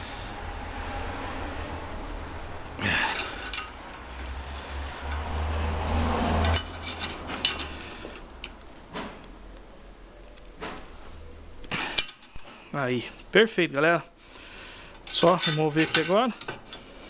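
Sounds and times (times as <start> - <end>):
metal tools clinking: 2.8 - 3.8, 6.4 - 7.9, 11.7 - 12.6, 14.9 - 17.0.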